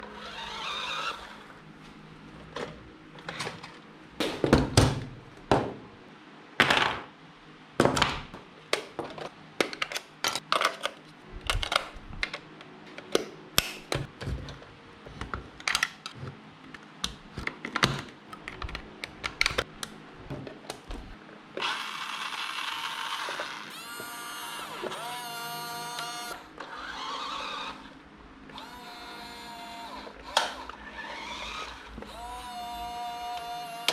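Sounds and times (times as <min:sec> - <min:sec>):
small electric motor whirring: 0:00.0 - 0:01.5, 0:21.6 - 0:27.9, 0:28.5 - 0:33.9.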